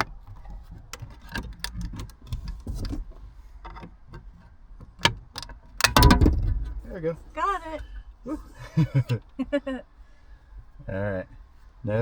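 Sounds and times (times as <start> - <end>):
sharp knock: 5.8 - 7.0.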